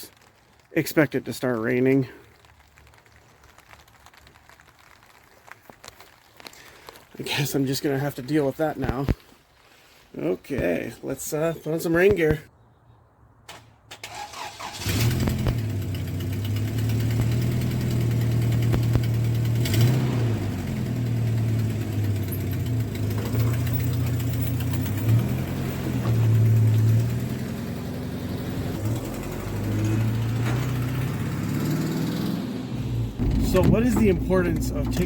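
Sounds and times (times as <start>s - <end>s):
engine starting and running: 13.5s - 35.0s.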